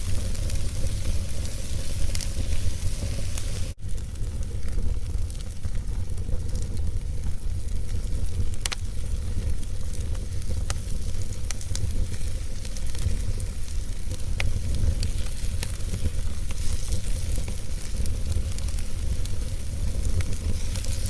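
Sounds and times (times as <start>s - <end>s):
fire crackling and popping: 0.0s - 21.0s
fire flames rumbling: 0.0s - 21.0s.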